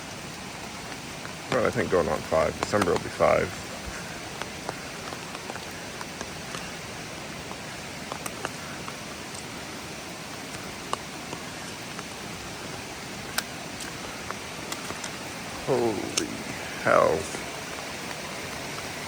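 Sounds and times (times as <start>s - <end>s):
rushing water: 0.0s - 19.0s
light ticks: 2.5s - 3.2s.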